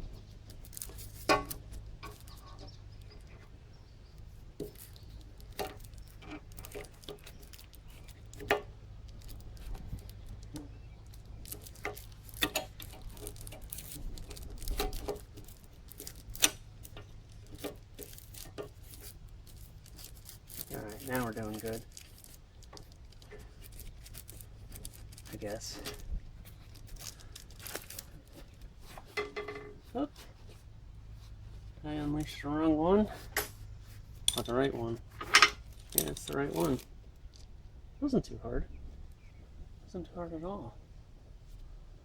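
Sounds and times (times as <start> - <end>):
hand tools clicking on metal: 4.6 - 26.0, 34.2 - 34.6.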